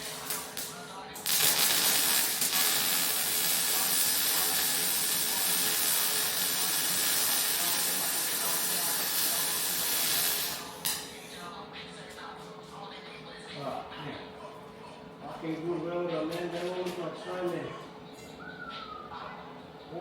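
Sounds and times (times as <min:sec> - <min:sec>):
welding arc crackling hiss: 0:00.0 - 0:11.1.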